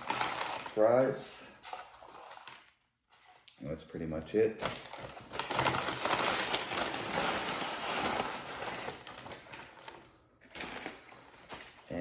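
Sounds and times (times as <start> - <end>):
paper packaging crinkling: 0.0 - 3.4, 4.6 - 12.0.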